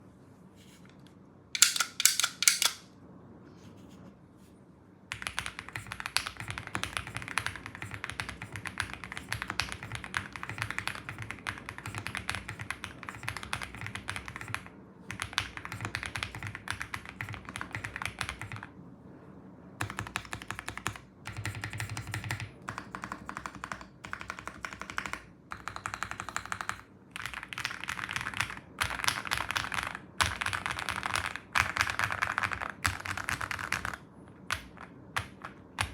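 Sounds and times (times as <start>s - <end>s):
mechanical keyboard key clacks: 1.6s - 2.8s.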